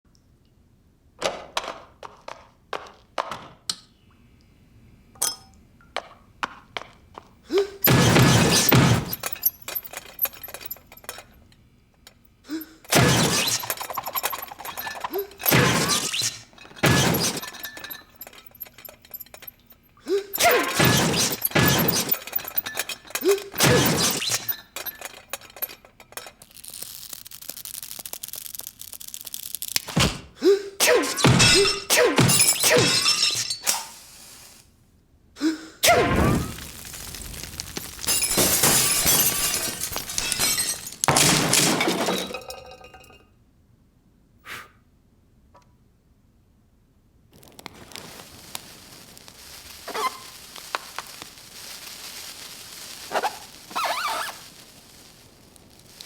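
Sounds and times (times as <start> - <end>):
glass smashing: 7.6 - 11.4, 12.6 - 28.9, 30.8 - 34.0, 35.8 - 43.2
light clinks and knocks: 8.3 - 12.2, 12.8 - 26.9.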